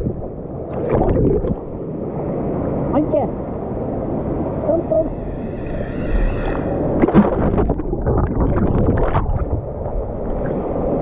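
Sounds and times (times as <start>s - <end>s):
rushing water churning: 0.0s - 1.8s, 6.1s - 11.0s
water splashing: 0.0s - 1.8s, 7.0s - 11.0s
wind buffeting microphone: 0.0s - 11.0s.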